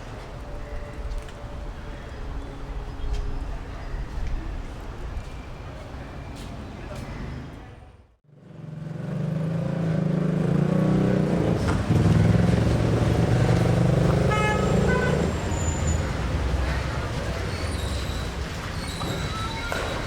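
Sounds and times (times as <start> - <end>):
short horn toot: 14.2 - 16.0.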